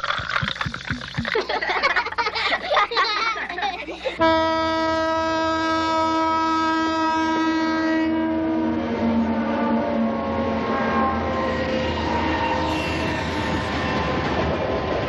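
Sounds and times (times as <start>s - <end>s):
train rumbling: 1.5s - 15.0s
train horn: 4.2s - 14.2s.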